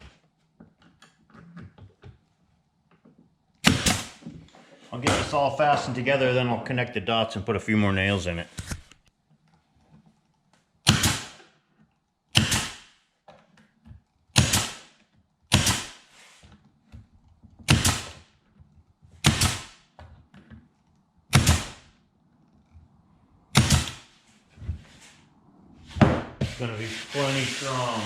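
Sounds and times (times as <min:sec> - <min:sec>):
nail gun shots: 0:03.6 - 0:04.2, 0:10.8 - 0:11.4, 0:12.3 - 0:13.0, 0:14.4 - 0:14.9, 0:15.5 - 0:16.1, 0:17.7 - 0:18.2, 0:19.2 - 0:19.8, 0:21.3 - 0:21.8, 0:23.5 - 0:24.1.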